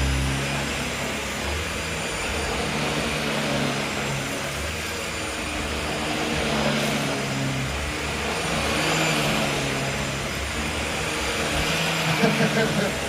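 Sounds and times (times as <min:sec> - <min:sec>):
upright vacuum cleaner running: 0:00.0 - 0:13.0.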